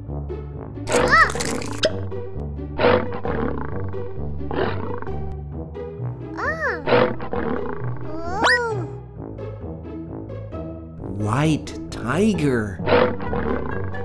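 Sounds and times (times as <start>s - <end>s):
tiger roaring and growling: 2.6s - 5.4s, 6.4s - 8.9s, 12.7s - 14.0s.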